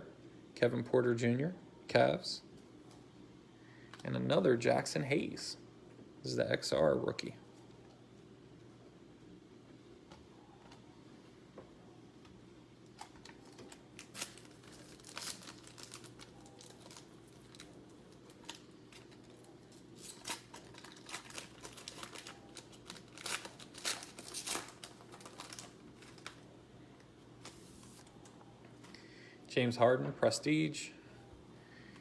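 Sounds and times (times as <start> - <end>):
faint steady hum: 0.0 - 32.0
cards and wrappers crinkling: 12.9 - 26.5, 27.4 - 28.3.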